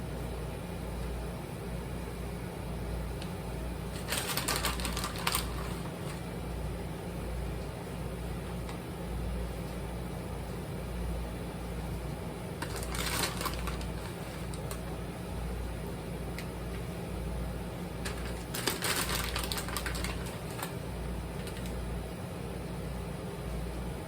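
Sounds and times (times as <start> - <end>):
steady low hum: 0.0 - 24.0
crinkly clicking handling noise: 3.2 - 6.3, 12.6 - 15.0, 16.3 - 16.9, 18.0 - 21.8.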